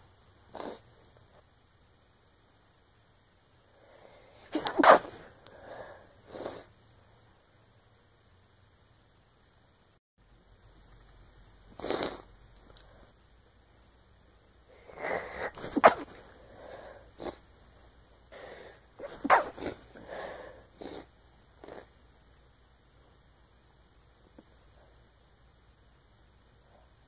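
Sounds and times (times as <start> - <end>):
breath sounds: 3.7 - 6.7, 14.7 - 17.4, 18.3 - 21.1
woman sneezing: 4.5 - 5.2, 15.0 - 16.2, 19.0 - 19.7.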